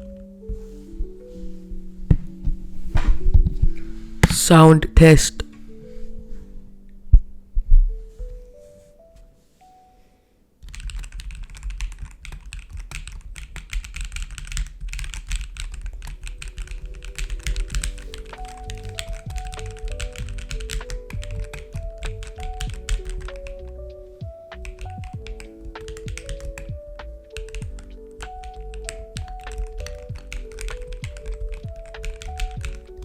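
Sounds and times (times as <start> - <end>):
fast typing on mechanical keyboard: 10.6 - 23.8, 24.5 - 33.0.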